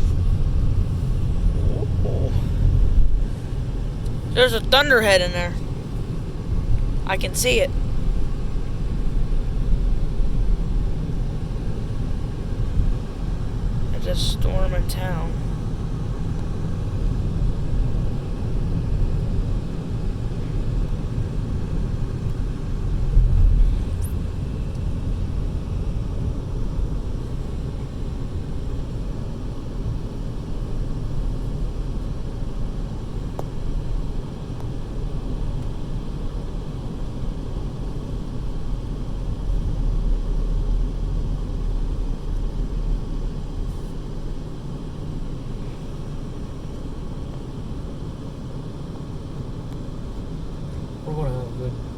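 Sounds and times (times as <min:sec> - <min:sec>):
car road and engine noise: 0:00.0 - 0:51.9.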